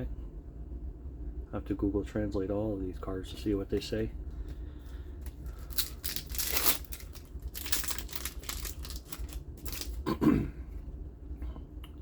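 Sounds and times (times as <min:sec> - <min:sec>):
wrapper crinkling and rustling: 0:05.3 - 0:10.0.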